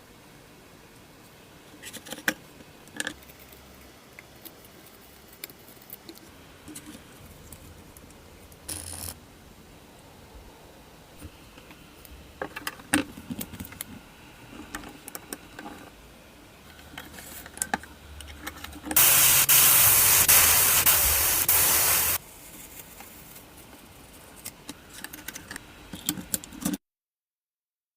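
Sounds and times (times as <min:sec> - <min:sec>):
loud pressurized hiss: 0:19.0 - 0:22.2.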